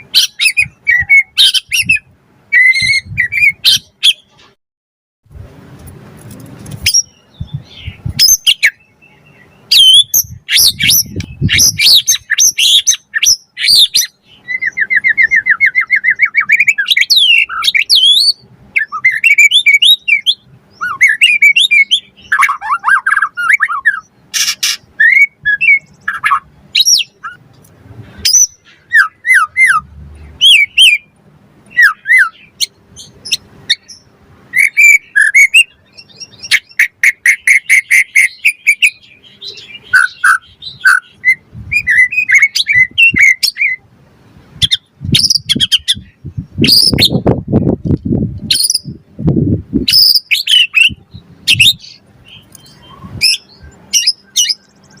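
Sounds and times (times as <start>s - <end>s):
bird singing whistled phrases: 0.0s - 4.3s, 6.9s - 27.4s, 28.3s - 31.1s, 31.7s - 43.8s, 44.6s - 47.2s, 49.9s - 55.0s.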